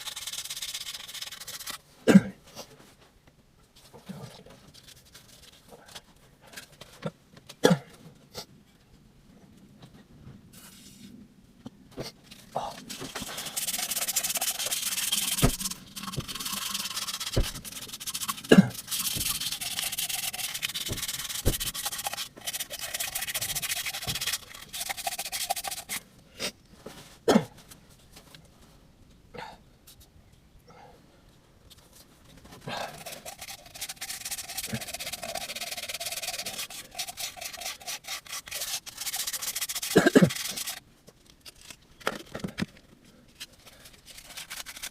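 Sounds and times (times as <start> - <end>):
abrasive scrubbing or sanding: 0.0 - 1.8, 12.9 - 26.0, 32.9 - 40.8, 43.9 - 44.9.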